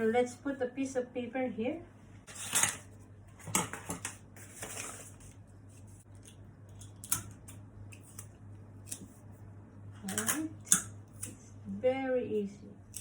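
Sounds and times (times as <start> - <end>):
steady low hum: 0.0 - 13.0
paper rustling and crinkling: 3.7 - 6.0.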